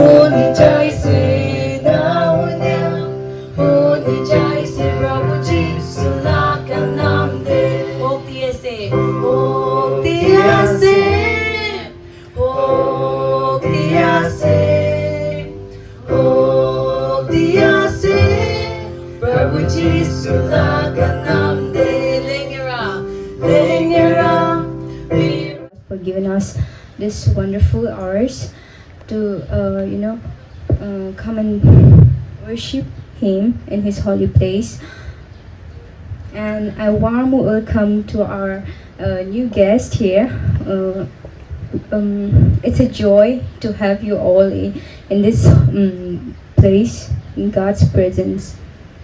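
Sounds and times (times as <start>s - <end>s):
woman singing: 0.0s - 16.2s, 17.2s - 25.8s
worship band with guitar: 0.0s - 25.6s.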